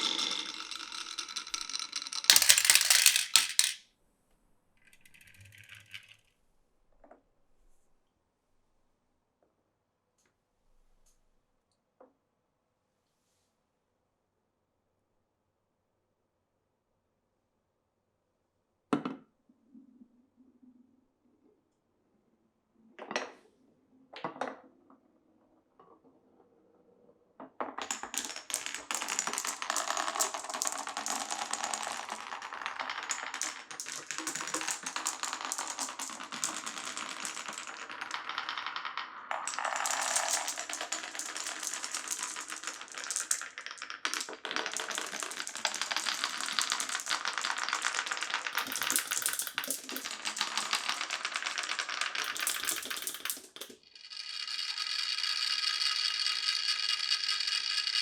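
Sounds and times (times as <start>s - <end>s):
marbles rattling down wooden run: 0.0s - 3.8s, 4.9s - 6.2s, 27.8s - 58.0s.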